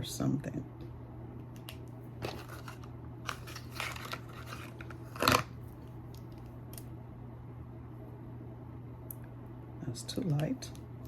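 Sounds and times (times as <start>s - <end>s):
steady low hum: 0.0s - 11.0s
rustling of makeup: 1.6s - 6.6s.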